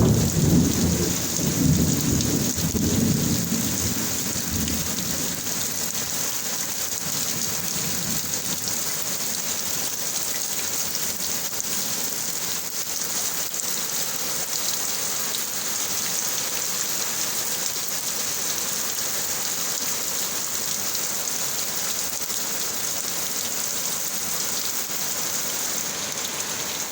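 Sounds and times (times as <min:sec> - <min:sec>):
thunder rumble: 0:00.0 - 0:05.4
heavy rain: 0:00.0 - 0:26.9.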